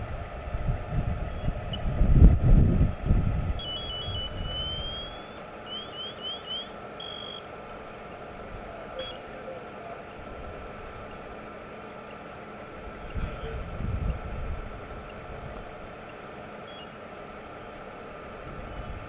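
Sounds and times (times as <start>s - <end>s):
engine hum: 0.0s - 19.0s
high electronic tones: 3.6s - 7.4s, 8.8s - 10.0s.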